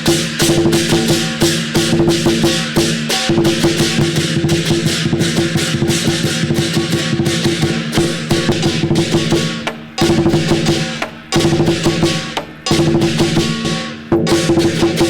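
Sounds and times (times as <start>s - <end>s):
upbeat music with percussion: 0.0s - 15.0s.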